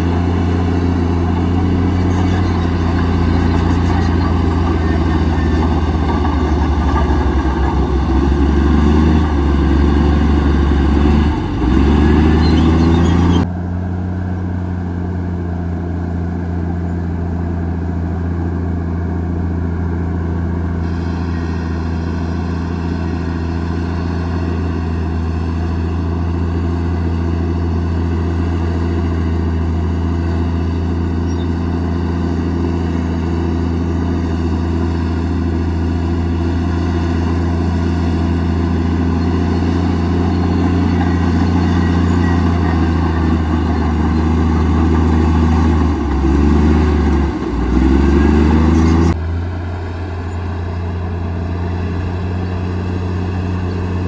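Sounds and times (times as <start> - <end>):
bulldozer diesel engine running: 0.0 - 54.0.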